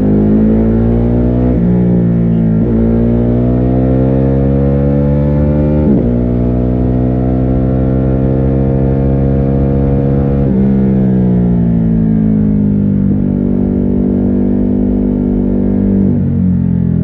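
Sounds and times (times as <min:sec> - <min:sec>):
muffled motorcycle engine accelerating: 0:00.0 - 0:17.0.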